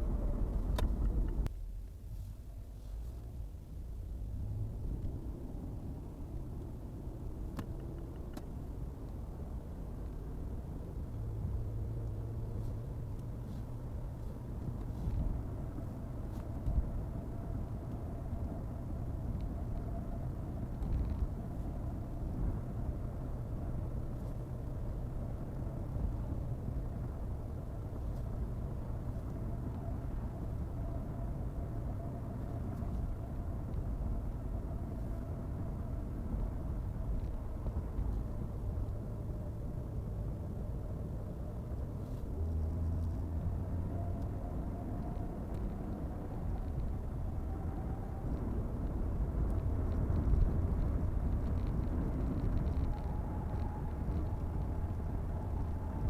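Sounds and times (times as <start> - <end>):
car driving rumble: 0.0 - 56.0.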